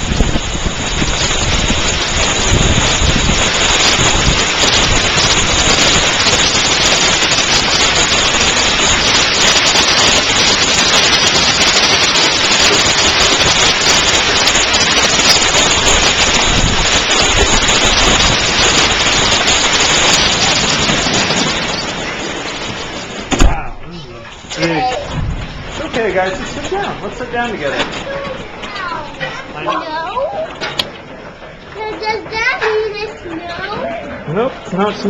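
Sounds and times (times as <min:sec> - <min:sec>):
hail clattering: 0:00.0 - 0:35.0
rain hiss: 0:00.0 - 0:35.0.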